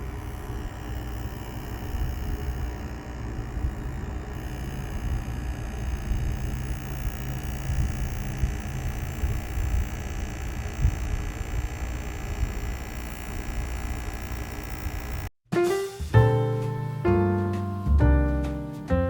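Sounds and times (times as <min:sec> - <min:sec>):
electronic device buzzing hum: 0:00.0 - 0:15.3.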